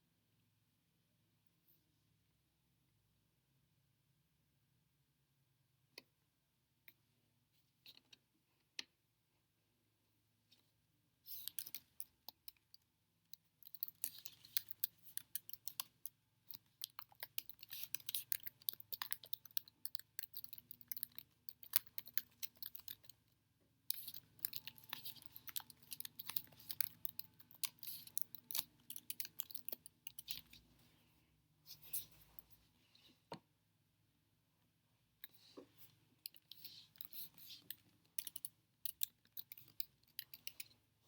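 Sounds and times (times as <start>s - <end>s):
rapid irregular clicking and tapping: 11.3s - 23.2s.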